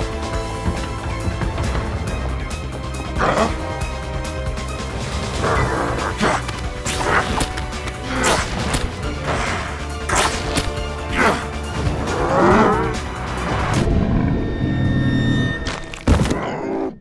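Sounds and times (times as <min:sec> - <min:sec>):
action music score: 0:00.0 - 0:16.4
wavering creature growl: 0:03.1 - 0:03.8, 0:05.2 - 0:13.7
whooshes and smashing hits: 0:06.2 - 0:11.4.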